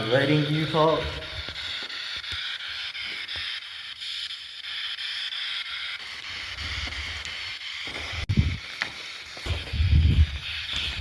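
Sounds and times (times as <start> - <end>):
faint regular stepping: 6.6 - 11.0.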